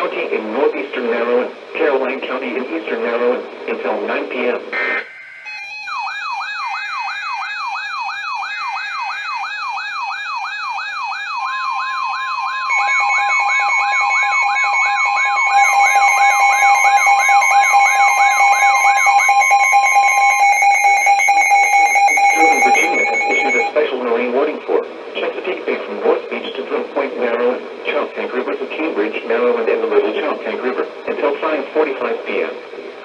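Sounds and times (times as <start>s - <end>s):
warbling alarm tone: 4.7s - 23.8s
fast sweeping siren: 4.8s - 23.8s
steady electronic tone: 12.6s - 23.8s.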